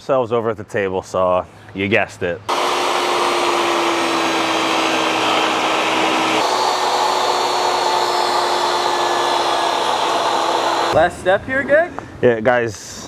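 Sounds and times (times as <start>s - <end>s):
table saw whining: 2.5s - 11.0s.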